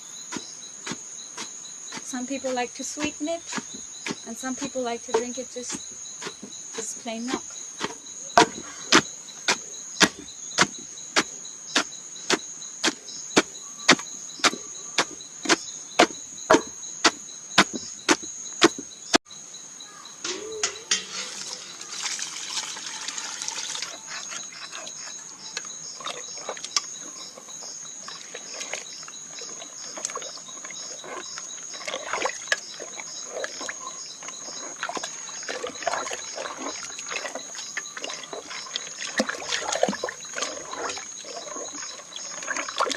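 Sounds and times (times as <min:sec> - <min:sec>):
high insect buzz: 0:00.0 - 0:42.9
fruit being stomped in a pot: 0:07.8 - 0:11.9, 0:12.8 - 0:18.9
water pouring: 0:20.3 - 0:24.3, 0:31.8 - 0:42.9
wet sloshing and squishing pulp: 0:26.0 - 0:42.9.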